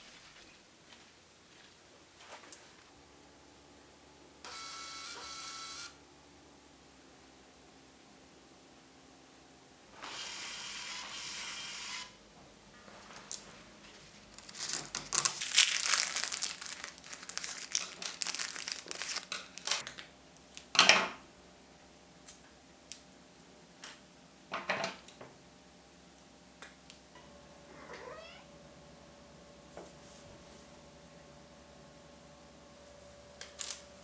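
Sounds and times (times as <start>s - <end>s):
wrapping material crinkling: 14.1s - 19.9s.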